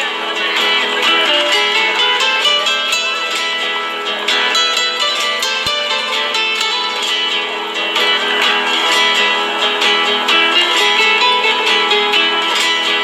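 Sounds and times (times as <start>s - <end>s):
acoustic guitar strumming: 0.0s - 13.0s.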